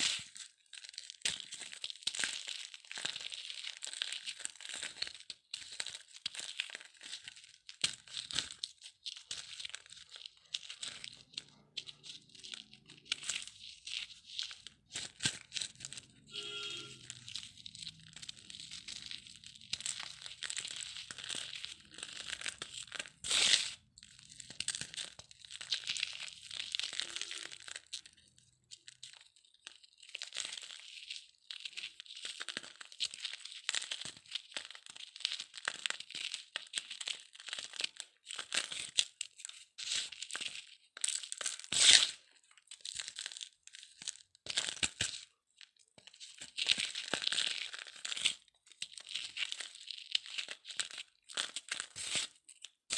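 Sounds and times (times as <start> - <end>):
dry cement crunching: 1.0 - 30.9.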